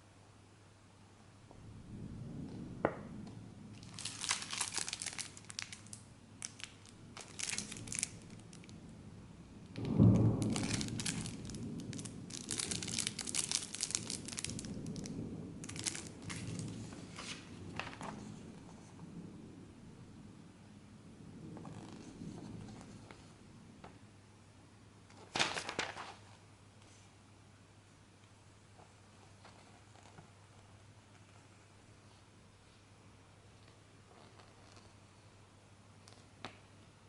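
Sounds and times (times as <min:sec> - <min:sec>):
packaging crinkled and torn: 0:03.8 - 0:08.8, 0:09.8 - 0:18.3, 0:25.2 - 0:26.2.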